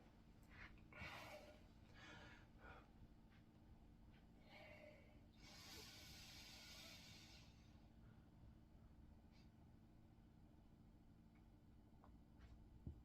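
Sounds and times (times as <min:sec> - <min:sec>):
man breathing faintly: 0:00.4 - 0:03.5, 0:04.1 - 0:08.3.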